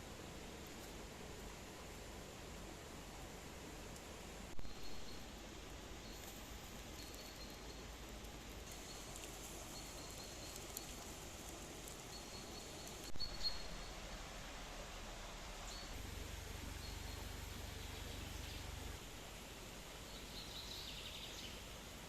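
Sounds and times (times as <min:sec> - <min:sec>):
birds chirping: 0:08.7 - 0:14.0.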